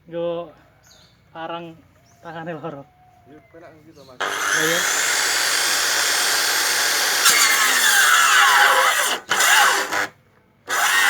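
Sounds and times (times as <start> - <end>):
circular saw cutting log: 4.2 - 11.0.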